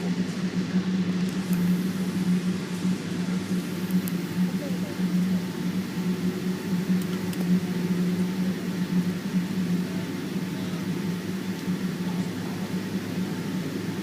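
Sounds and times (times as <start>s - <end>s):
aircraft cabin engine hum: 0.0s - 14.0s.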